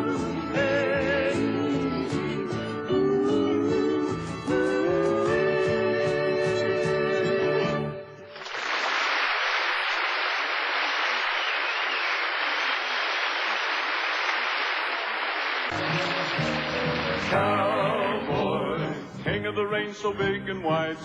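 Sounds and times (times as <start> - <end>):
audience applauding: 8.3 - 18.4
band music: 15.7 - 20.7.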